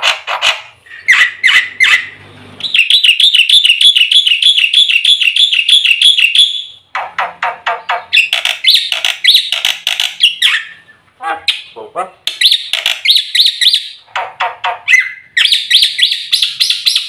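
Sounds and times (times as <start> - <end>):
bird harsh chattering: 0.0 - 17.0
bird trilling high notes: 0.6 - 6.8.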